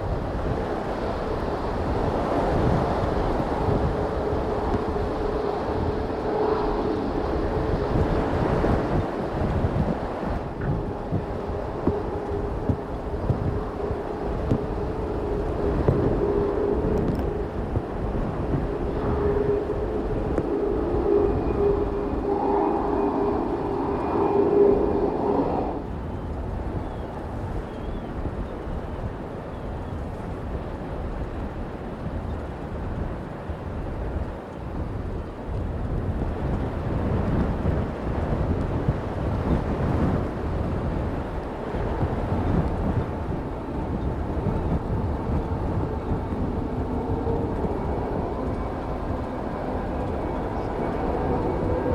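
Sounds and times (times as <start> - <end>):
wind buffeting microphone: 0.0 - 51.9
jet engines whining: 3.2 - 26.5, 41.4 - 51.9.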